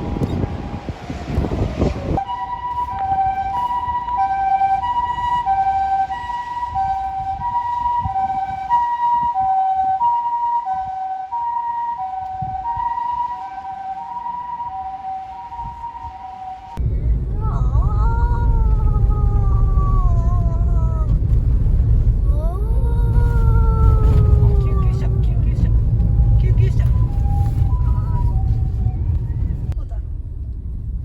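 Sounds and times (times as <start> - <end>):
ambulance siren two-tone wail: 0.0 - 16.8, 23.4 - 29.8
low road rumble: 0.0 - 31.0.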